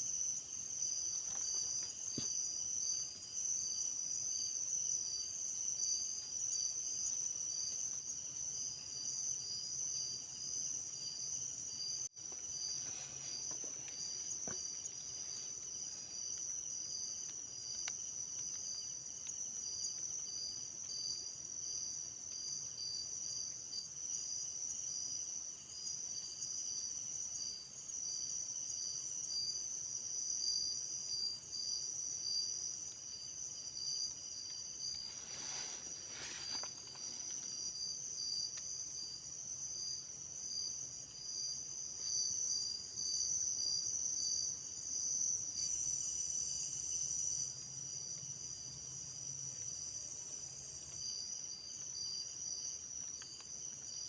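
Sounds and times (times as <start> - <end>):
insects trilling: 0.0 - 54.0
rustling: 34.8 - 37.9.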